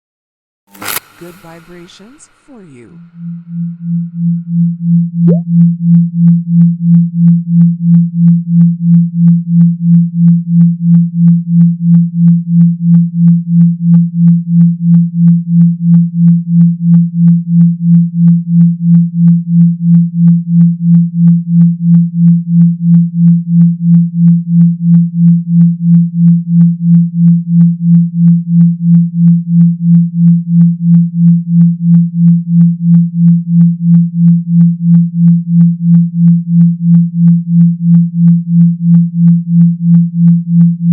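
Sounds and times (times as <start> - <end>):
pulsing low electronic hum: 0.7 - 8.6.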